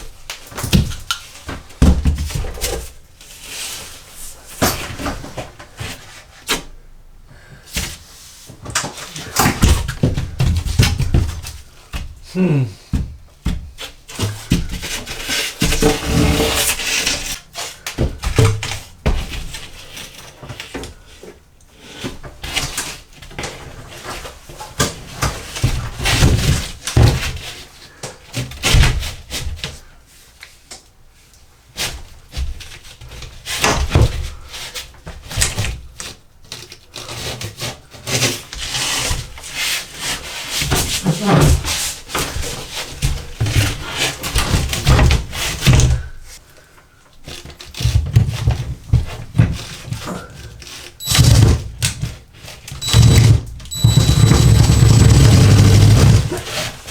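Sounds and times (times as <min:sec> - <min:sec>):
knocks and clunks: 0:52.8 - 0:56.4
scraping and rubbing: 0:52.8 - 0:56.9.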